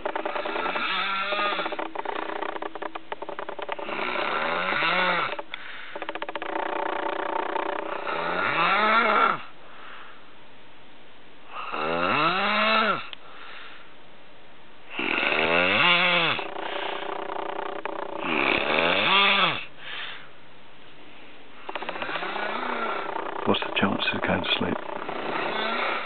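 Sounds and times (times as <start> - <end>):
person snoring: 14.9 - 17.1, 24.8 - 26.0.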